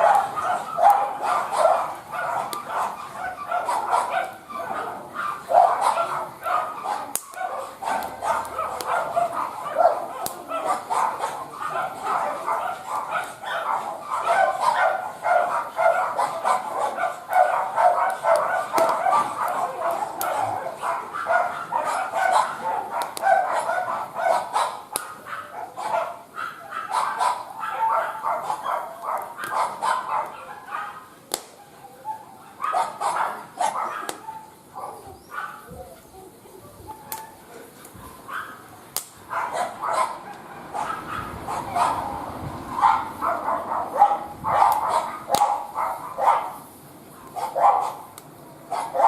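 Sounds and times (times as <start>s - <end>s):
dog whining and yipping: 0.4s - 7.1s
sharp crackles: 5.3s - 20.8s, 24.4s - 25.3s, 28.3s - 31.7s, 38.9s - 39.4s, 44.6s - 48.4s.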